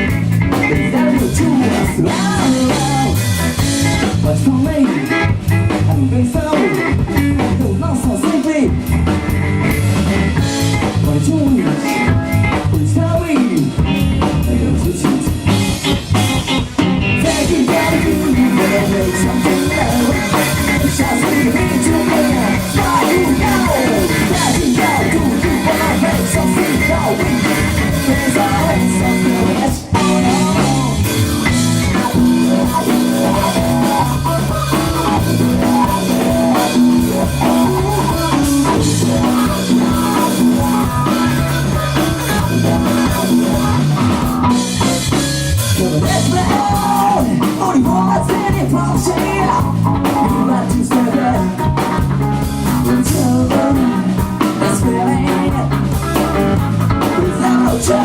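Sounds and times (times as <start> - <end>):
live funk rock band: 0.0 - 58.0.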